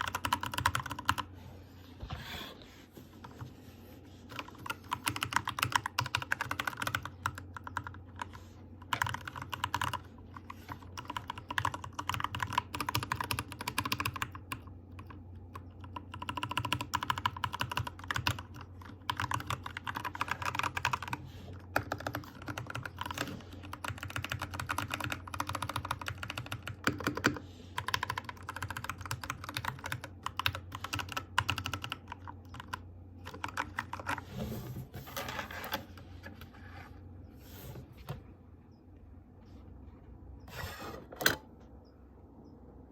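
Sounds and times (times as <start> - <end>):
mechanical keyboard typing: 0.0 - 1.3, 4.3 - 34.2.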